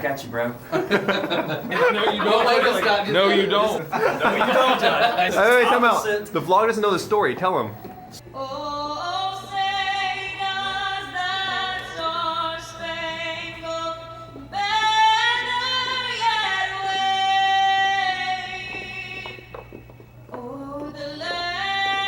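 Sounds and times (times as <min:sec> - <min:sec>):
women singing with vibrato: 0:08.2 - 0:22.0.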